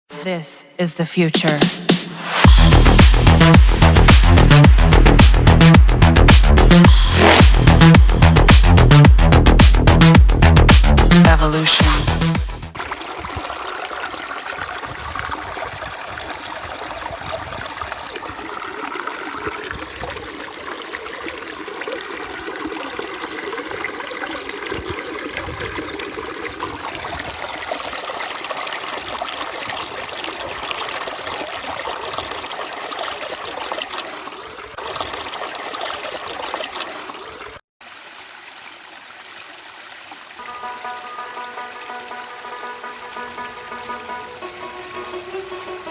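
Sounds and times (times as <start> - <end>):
stream water trickling: 12.7 - 45.9.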